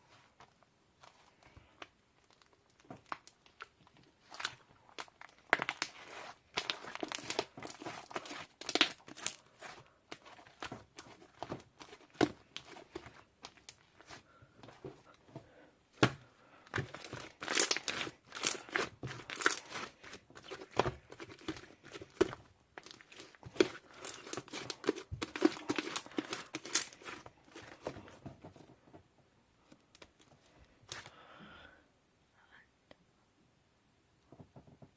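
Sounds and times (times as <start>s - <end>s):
crinkling and rustling: 0.0s - 31.1s.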